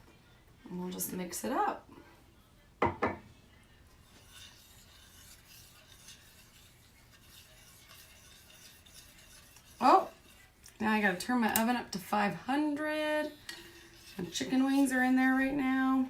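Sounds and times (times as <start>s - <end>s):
spoon scraping pan: 3.9s - 16.0s.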